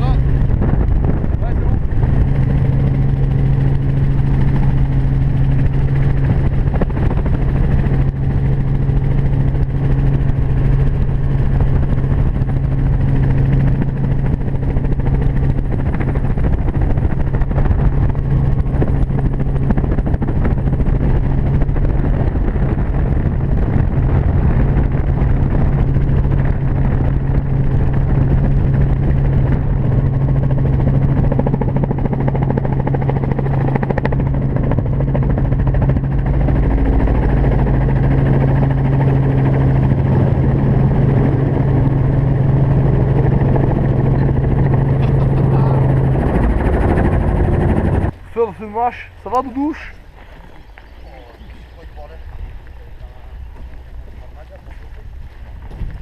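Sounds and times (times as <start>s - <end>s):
engine drone: 0.0s - 56.0s.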